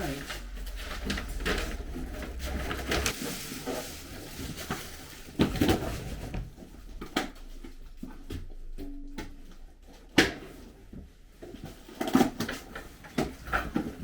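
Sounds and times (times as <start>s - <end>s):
rustling noise: 0.0s - 8.8s.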